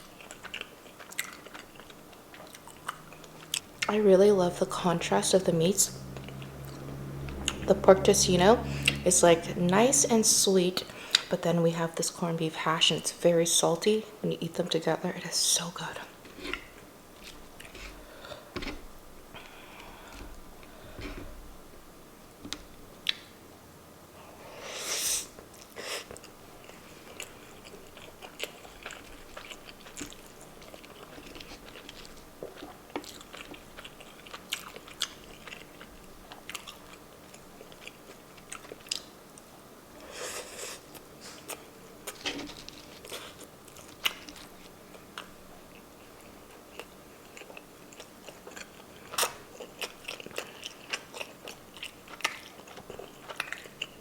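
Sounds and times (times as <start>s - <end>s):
person chewing food: 0.0s - 4.0s, 10.8s - 11.4s, 16.1s - 21.8s, 25.4s - 54.0s.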